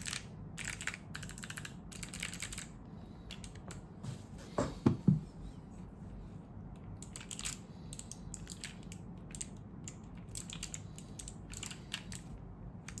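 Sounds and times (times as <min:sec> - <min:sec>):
mechanical keyboard typing: 0:00.0 - 0:03.6, 0:07.0 - 0:12.3.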